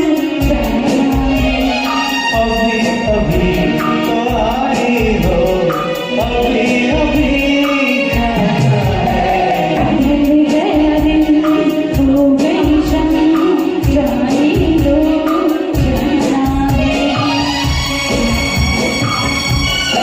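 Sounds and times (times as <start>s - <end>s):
backing track with steady beat: 0.0s - 20.0s
person singing: 0.0s - 20.0s
cymbal ticking: 3.8s - 8.5s, 10.1s - 15.8s.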